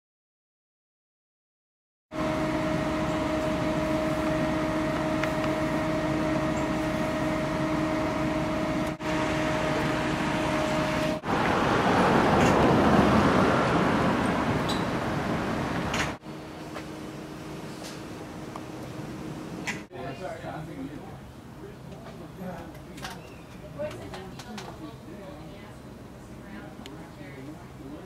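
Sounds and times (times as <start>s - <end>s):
car engine drone: 2.1s - 19.9s
road noise: 2.1s - 28.0s.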